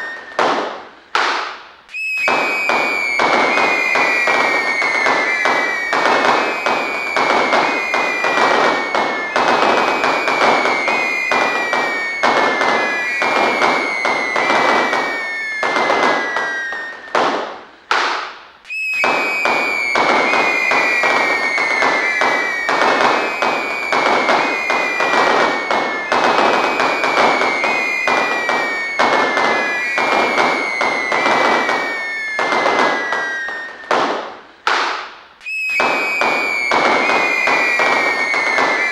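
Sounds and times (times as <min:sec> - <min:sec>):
shrill falling whistles: 0:00.0 - 0:00.7, 0:01.9 - 0:17.4, 0:18.6 - 0:34.2, 0:35.4 - 0:38.9
fireworks crackling: 0:00.0 - 0:38.9.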